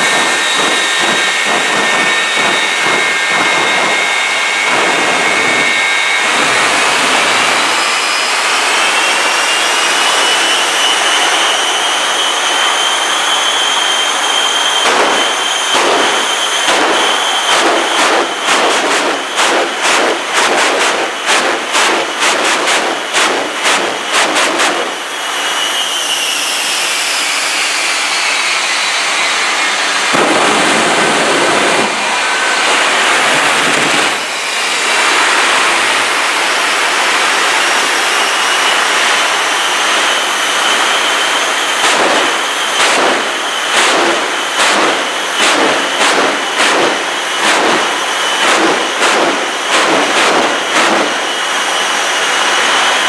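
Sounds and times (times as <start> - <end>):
jet engines roaring: 0.0 - 53.0
rapid pops: 14.9 - 24.9, 41.8 - 51.2.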